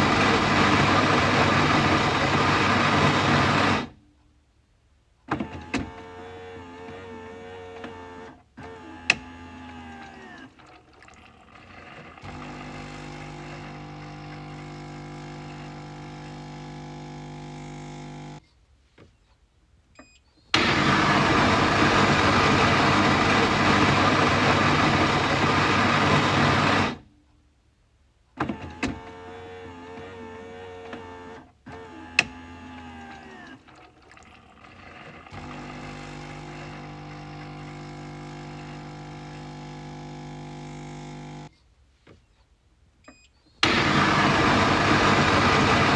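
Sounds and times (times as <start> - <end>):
coffee machine motor hum: 0.0 - 4.0, 11.5 - 18.4, 20.6 - 27.0, 29.0 - 41.5, 43.6 - 45.9.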